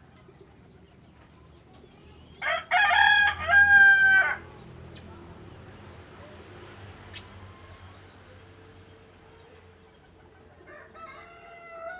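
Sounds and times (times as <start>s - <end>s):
small birds chirping: 0.0s - 2.9s, 4.4s - 10.8s
rooster crowing: 2.4s - 4.4s, 10.7s - 11.9s.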